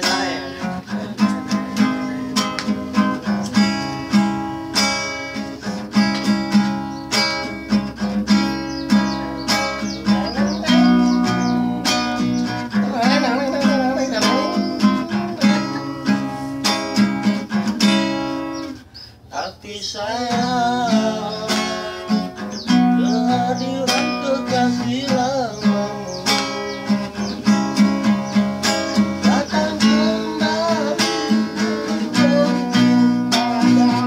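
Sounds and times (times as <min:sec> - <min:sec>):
acoustic guitar strumming chords: 0:00.0 - 0:34.0
wavering melody line: 0:06.8 - 0:18.8.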